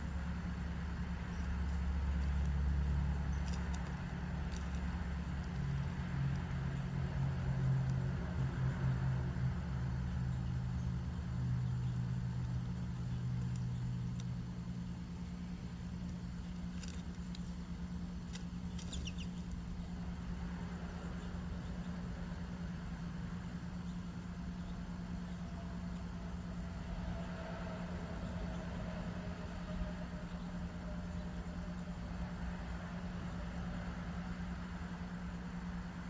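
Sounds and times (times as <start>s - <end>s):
low rumble and hum: 0.0s - 36.0s
small bird chirping: 1.2s - 26.5s.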